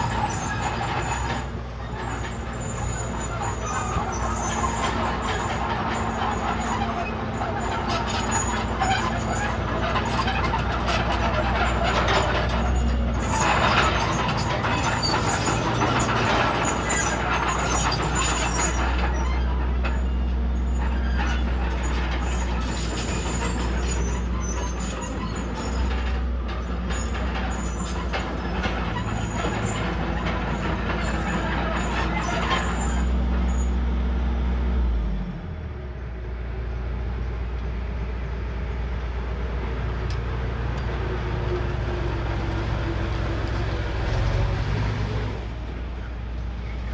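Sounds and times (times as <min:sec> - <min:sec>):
clanking: 0:00.0 - 0:20.0, 0:21.0 - 0:33.2
bulldozer diesel engine under load: 0:00.0 - 0:46.9.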